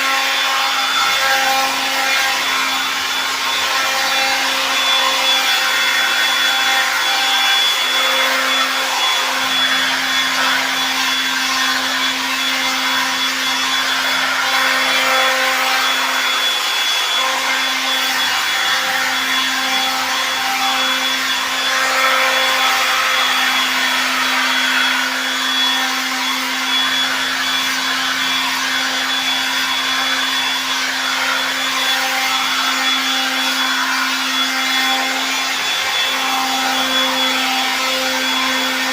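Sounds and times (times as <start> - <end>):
power tool motor whining: 0.0 - 38.9.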